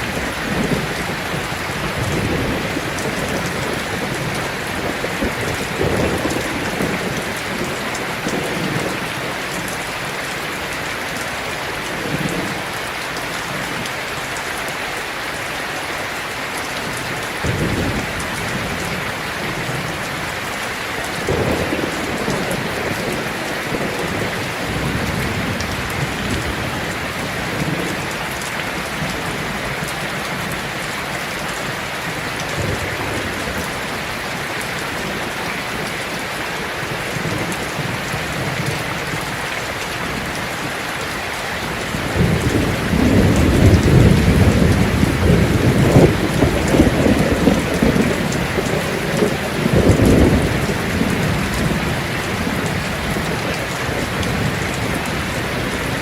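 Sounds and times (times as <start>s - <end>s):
thunder rumbling: 0.0s - 10.1s, 16.8s - 36.0s, 41.5s - 56.0s
heavy rain on a tin roof: 0.0s - 56.0s.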